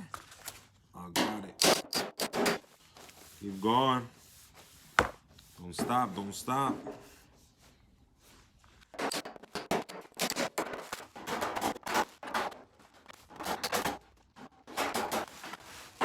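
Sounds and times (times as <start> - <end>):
hand tools striking steel panel: 1.2 - 2.6, 9.0 - 12.6.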